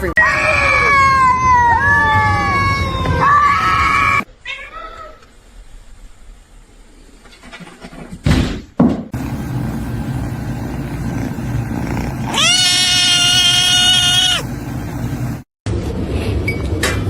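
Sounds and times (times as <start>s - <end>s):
low rumbling noise: 9.2s - 15.5s
animal high-pitched call: 12.2s - 14.5s.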